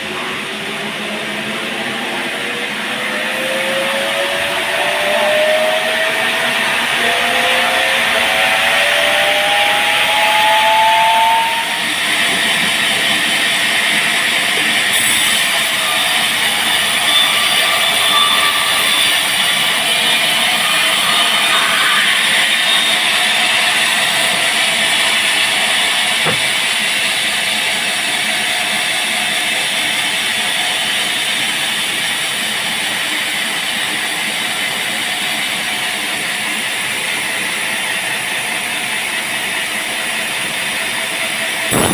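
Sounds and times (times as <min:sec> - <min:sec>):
rising saw whine: 0:00.0 - 0:32.5, 0:41.7 - 0:41.9
band sawmill cutting log: 0:13.7 - 0:27.8.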